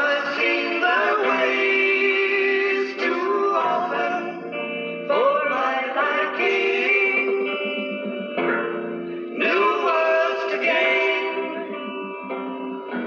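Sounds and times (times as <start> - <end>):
people singing: 0.0 - 8.5, 9.3 - 13.0
rock band playing live: 4.4 - 13.0.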